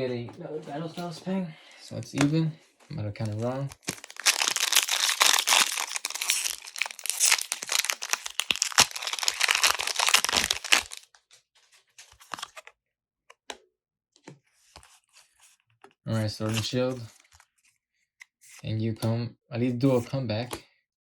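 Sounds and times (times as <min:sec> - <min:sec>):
foil wrapper crinkling and tearing: 0:03.2 - 0:11.2, 0:11.8 - 0:12.7.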